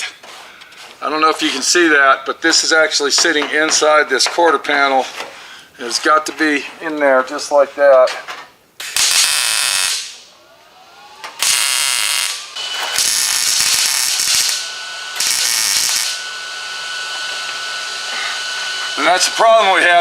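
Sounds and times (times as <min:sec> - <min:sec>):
welding crackle: 0:08.8 - 0:10.2, 0:11.4 - 0:16.2.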